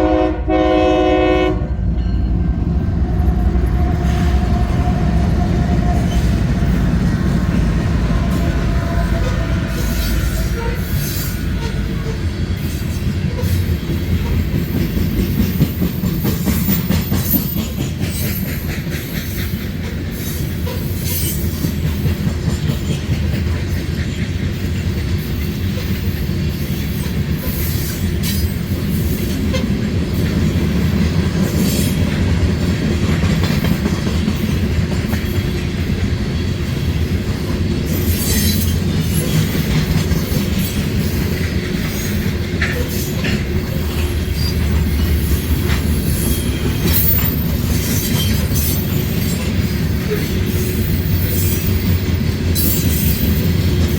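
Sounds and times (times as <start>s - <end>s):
train wheels rumbling on rail: 0.0s - 53.9s
high wheel squeal: 8.2s - 15.8s, 41.9s - 53.5s
clicks and clacks of rails: 13.3s - 26.0s, 37.5s - 44.9s.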